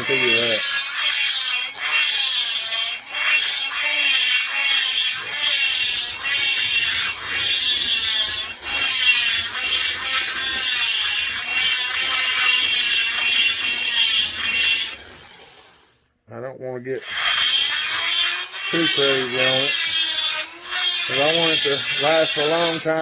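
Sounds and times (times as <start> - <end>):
rotary grinder cutting metal: 0.0 - 15.5, 17.0 - 23.0.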